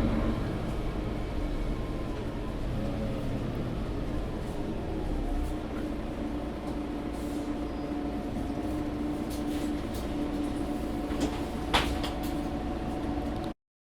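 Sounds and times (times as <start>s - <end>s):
bus engine rumble and hum: 0.0s - 13.6s.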